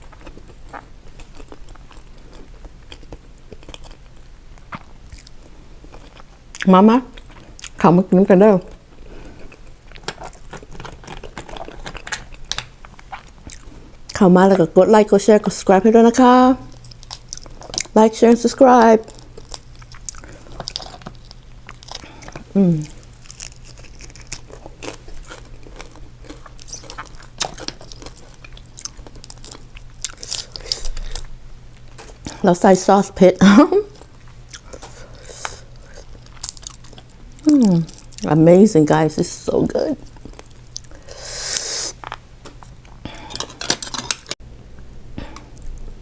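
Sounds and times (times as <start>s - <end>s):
wet chewing and biting: 0.0s - 7.8s, 9.3s - 14.2s, 16.8s - 18.0s, 19.1s - 32.4s, 34.0s - 38.2s
small crunches and clicks: 9.5s - 13.7s
crab shell cracking: 9.6s - 13.6s.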